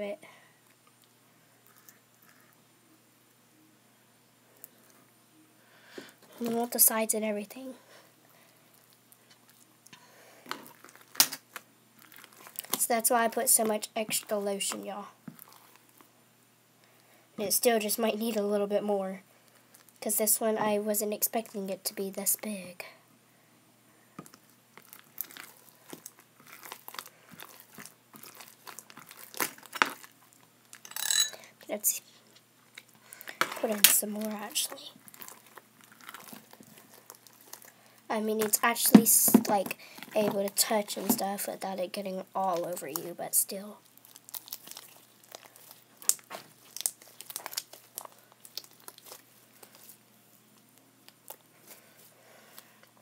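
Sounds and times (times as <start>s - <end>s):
slime popping: 24.2s - 30.8s, 44.0s - 49.8s
sticky slime crackles and clicks: 24.2s - 30.8s, 44.0s - 49.7s.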